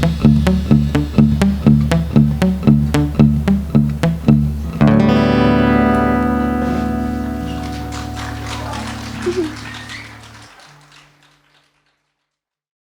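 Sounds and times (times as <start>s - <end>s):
drum pattern: 0.0s - 4.5s
distorted electric guitar chord: 0.0s - 9.2s
bass notes: 0.0s - 9.9s.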